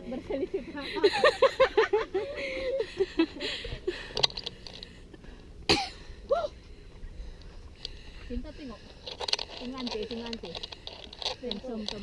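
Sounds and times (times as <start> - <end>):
cough: 5.7 - 6.0.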